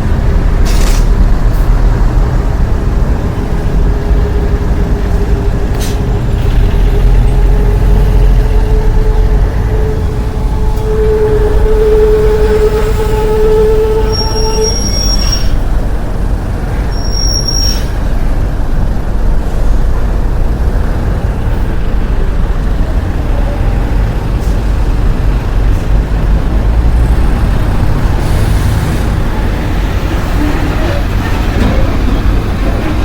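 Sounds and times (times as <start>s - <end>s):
heavy truck engine rumbling: 0.0s - 33.0s
held pitched tone: 3.8s - 15.6s
brief high squeals: 8.0s - 15.6s, 16.9s - 18.0s.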